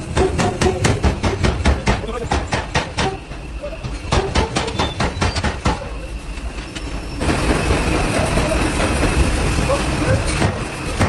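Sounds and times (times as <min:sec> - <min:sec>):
hammer blows on hot iron: 0:00.0 - 0:06.0
loud machine noise: 0:00.0 - 0:11.0.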